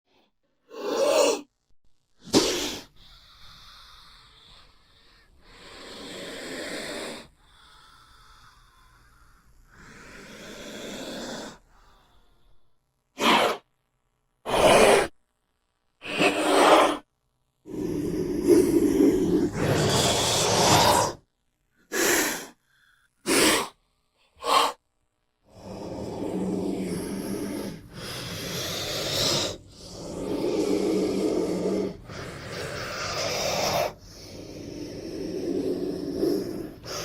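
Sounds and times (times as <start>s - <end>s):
snake hissing: 2.2s - 9.0s, 9.7s - 11.6s, 13.2s - 13.6s, 14.5s - 15.1s, 16.0s - 17.0s, 17.7s - 21.2s, 21.9s - 22.6s, 23.2s - 23.8s, 24.4s - 24.8s, 25.5s - 37.0s.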